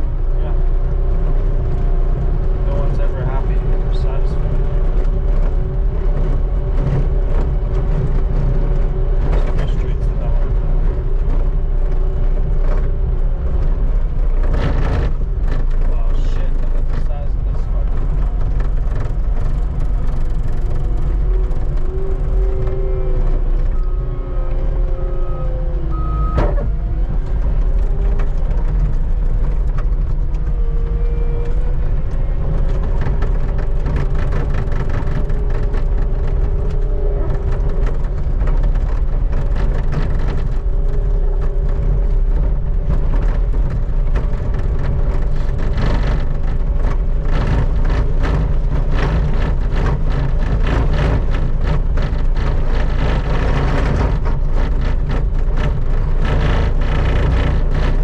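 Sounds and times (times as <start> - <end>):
clatter: 0.0 - 58.0
skid steer engine running: 0.0 - 58.0.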